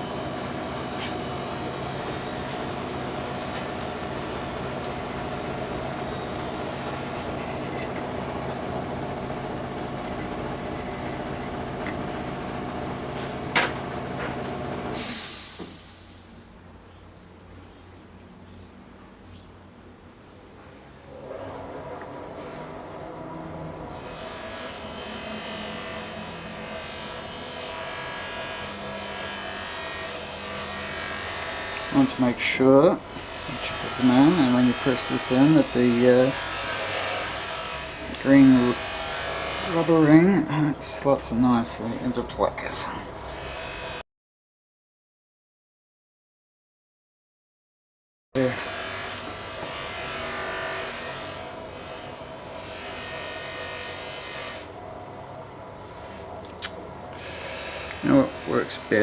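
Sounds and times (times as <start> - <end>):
electrical buzzing hum: 0.0 - 15.0
machine humming: 0.0 - 15.0, 21.1 - 44.0, 48.4 - 59.0
sharp click: 56.4 - 56.8.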